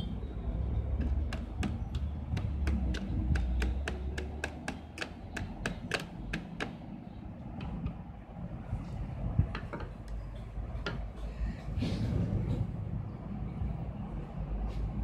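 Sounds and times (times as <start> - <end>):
rapid mechanical clicking: 1.0 - 6.8.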